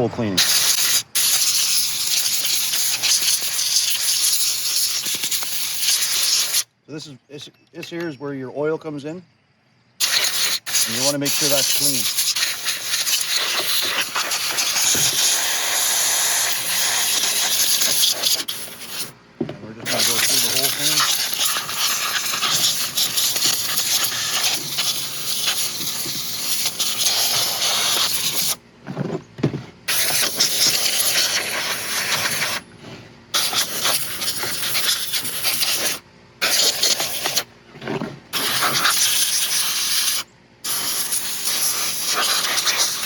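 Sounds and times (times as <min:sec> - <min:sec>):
compressed air blow gun hissing: 0:00.4 - 0:06.7, 0:10.0 - 0:19.2, 0:19.8 - 0:28.6, 0:29.9 - 0:32.6, 0:33.4 - 0:37.5, 0:38.3 - 0:43.0.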